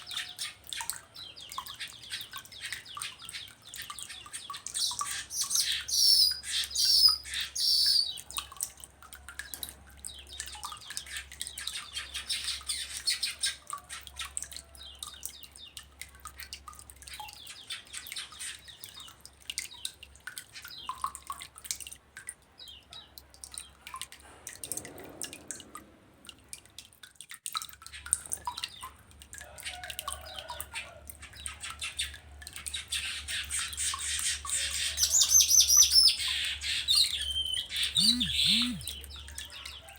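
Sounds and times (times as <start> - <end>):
bird singing buzzy chatter: 37.8 - 39.1.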